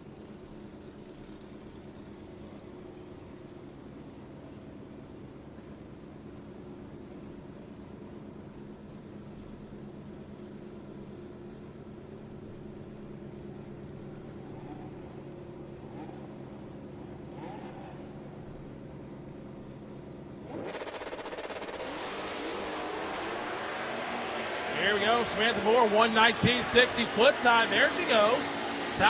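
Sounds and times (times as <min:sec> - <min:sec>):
race car engines idling: 0:00.0 - 0:29.0
engines revving: 0:15.8 - 0:18.2, 0:20.4 - 0:29.0
cars launching at full throttle: 0:20.4 - 0:29.0.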